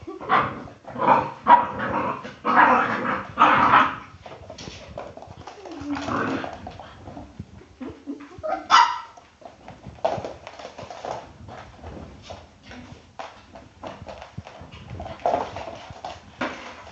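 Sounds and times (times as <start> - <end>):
dog barking: 8.7 - 9.2.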